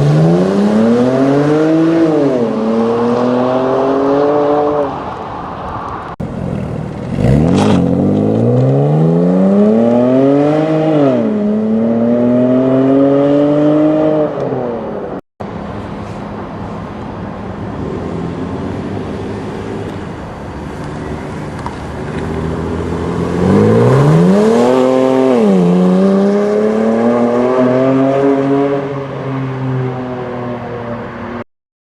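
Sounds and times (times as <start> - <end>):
car engine accelerating through gears: 6.5 - 14.8, 22.1 - 29.0.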